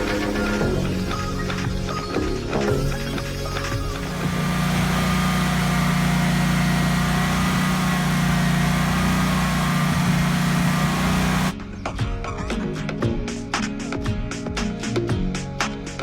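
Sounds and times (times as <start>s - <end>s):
small engine humming: 0.0s - 11.6s.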